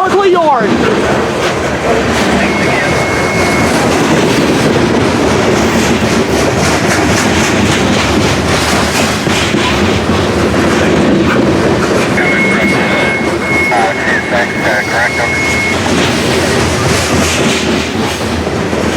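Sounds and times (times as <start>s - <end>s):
freight train rumbling past: 0.0s - 18.9s
wheels clicking over rail joints: 4.6s - 12.1s.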